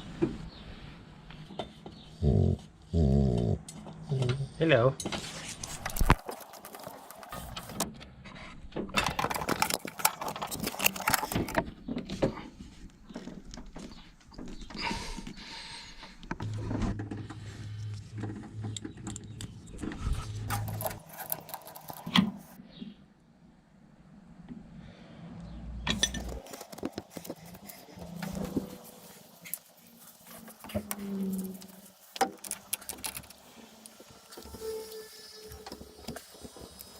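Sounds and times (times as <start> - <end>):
metal tools clinking and rattling: 8.9 - 11.7, 25.9 - 36.9.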